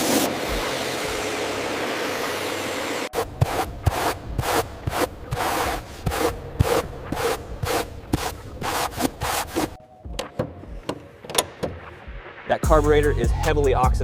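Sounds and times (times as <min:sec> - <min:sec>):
rhythmic scraping strokes: 0:12.6 - 0:14.0.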